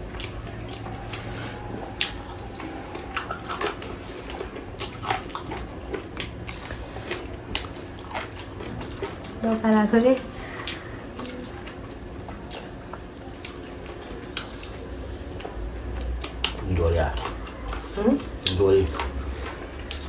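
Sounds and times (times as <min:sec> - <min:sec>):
low steady hum: 0:00.0 - 0:20.0
people chewing meat: 0:00.0 - 0:20.0.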